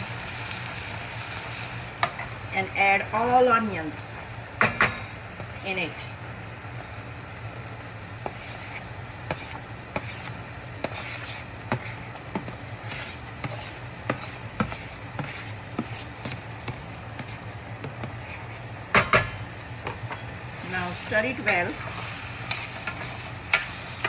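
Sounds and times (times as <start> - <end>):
onions sizzling in oil: 0.0 - 24.0
spoon scraping pan: 2.0 - 4.0, 8.1 - 24.0.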